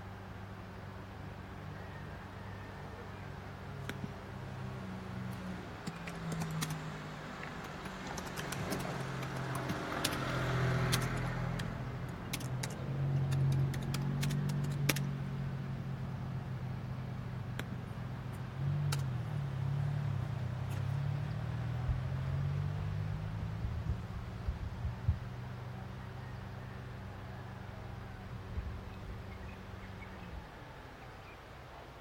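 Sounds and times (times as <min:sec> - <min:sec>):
motor engine humming: 0:03.6 - 0:22.9
clicks and light rattles: 0:05.3 - 0:15.1, 0:18.9 - 0:19.1.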